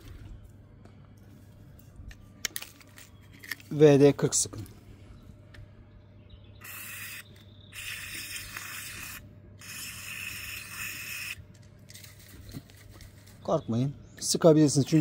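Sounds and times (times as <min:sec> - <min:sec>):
aerosol can spraying: 0:06.6 - 0:11.4.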